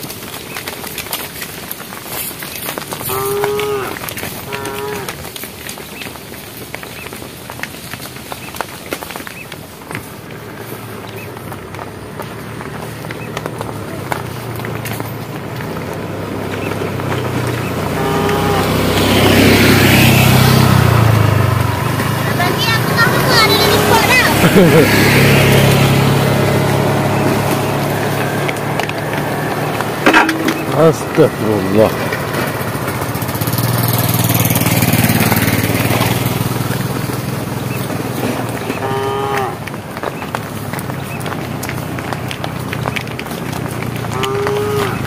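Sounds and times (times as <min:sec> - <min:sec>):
vehicle engine passing by: 0:10.4 - 0:45.0.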